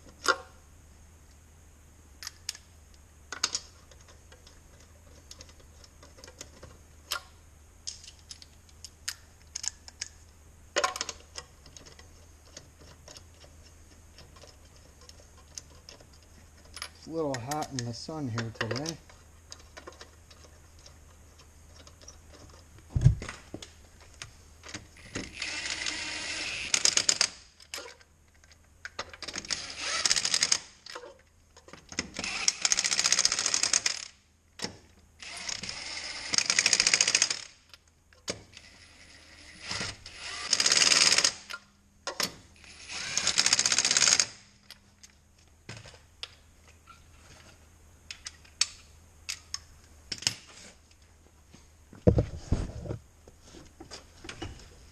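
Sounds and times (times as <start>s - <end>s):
loud thump: 22.9s - 23.3s.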